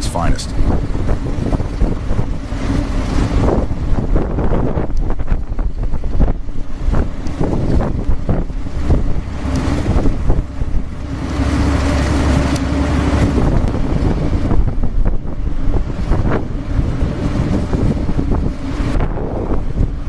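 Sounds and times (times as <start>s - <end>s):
excavator diesel engine running: 0.0s - 4.9s, 6.0s - 20.0s
wind buffeting microphone: 0.0s - 20.0s.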